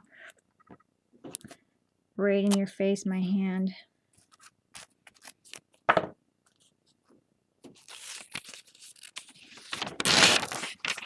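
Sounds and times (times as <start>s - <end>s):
paper rustling and crinkling: 4.2s - 5.8s, 7.7s - 11.0s.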